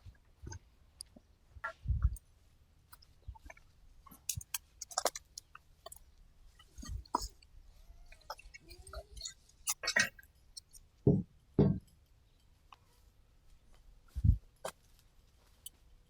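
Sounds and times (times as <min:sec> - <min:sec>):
fence hardware knocking and clinking: 0:11.1 - 0:11.9.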